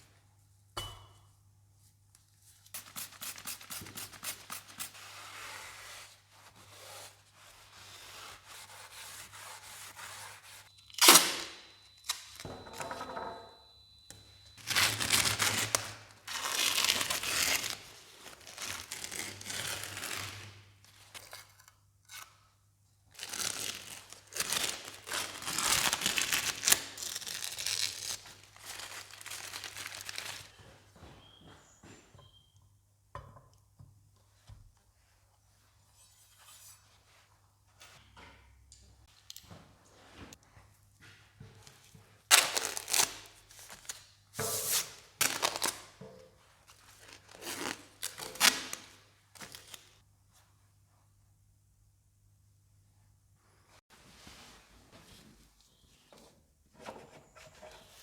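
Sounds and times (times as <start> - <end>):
rustling handling noises: 23.2 - 32.1.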